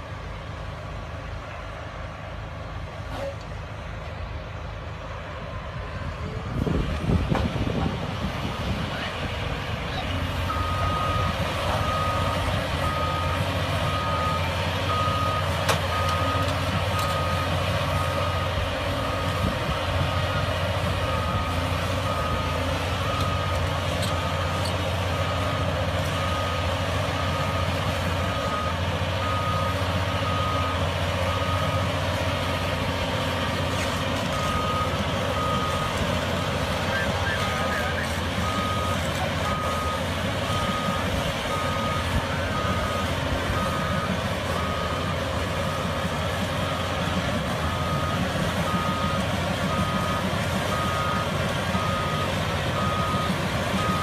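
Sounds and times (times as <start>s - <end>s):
diesel engine running: 0.0s - 54.0s
reversing alarm beeping: 10.4s - 33.4s, 34.3s - 54.0s.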